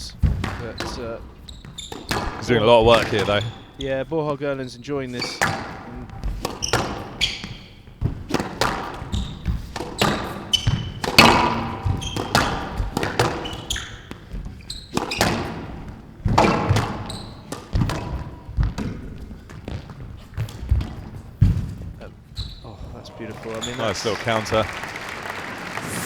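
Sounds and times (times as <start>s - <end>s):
squash ball hits: 0.0s - 3.9s, 5.4s - 22.0s.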